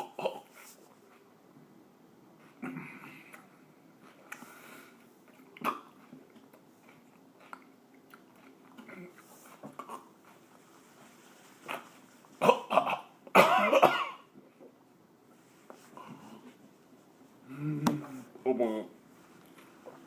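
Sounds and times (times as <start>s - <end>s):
man coughing: 12.4s - 14.3s.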